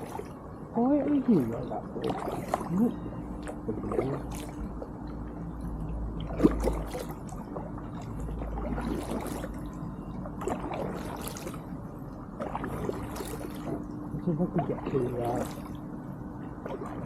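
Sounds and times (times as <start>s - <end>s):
water trickling off paddle: 0.0s - 15.9s
steady low rumble: 0.0s - 17.0s
paddle splashing into water: 1.0s - 4.6s, 6.3s - 9.7s, 10.4s - 11.7s, 12.4s - 13.8s.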